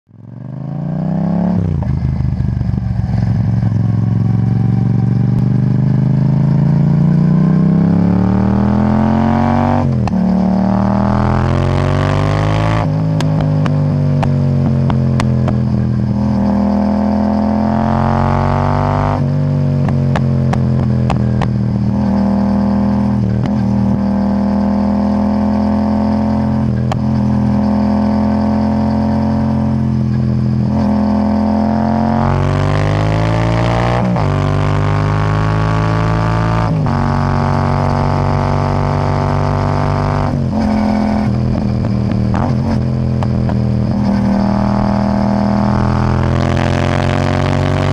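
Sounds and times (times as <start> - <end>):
motorcycle engine revving: 0.1 - 47.9
exhaust backfire pops: 19.8 - 22.1.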